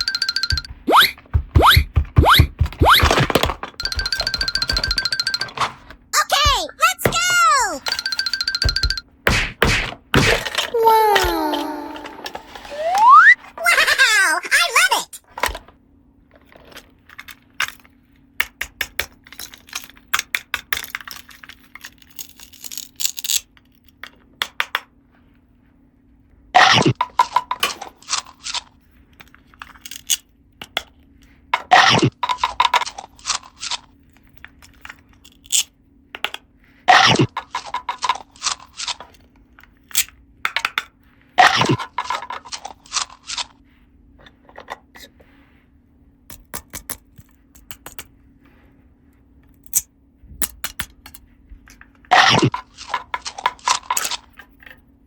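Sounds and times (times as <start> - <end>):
plastic toy pieces clattering: 0.0 - 1.4, 2.8 - 6.0, 7.0 - 9.0, 10.2 - 14.1, 16.3 - 24.8, 27.0 - 30.8, 31.6 - 36.3, 37.2 - 43.5, 50.4 - 54.8.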